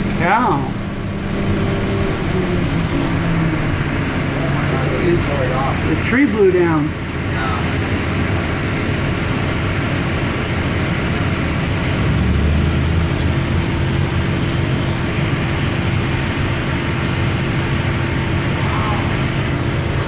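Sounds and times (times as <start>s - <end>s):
bus engine and road noise: 0.0s - 20.0s.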